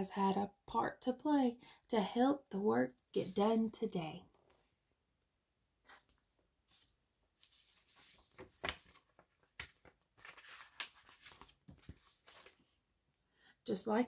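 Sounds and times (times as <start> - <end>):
paper pages rustling and turning: 5.8 - 12.8.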